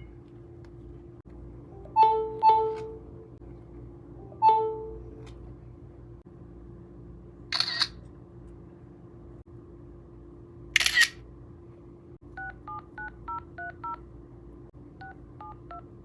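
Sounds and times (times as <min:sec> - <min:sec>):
camera shutter click: 0:07.5 - 0:08.0, 0:10.8 - 0:11.2.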